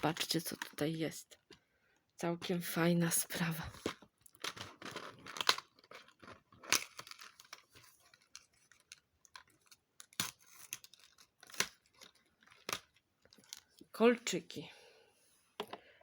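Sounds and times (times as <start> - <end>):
plastic foil crinkling and tearing: 4.2 - 13.8.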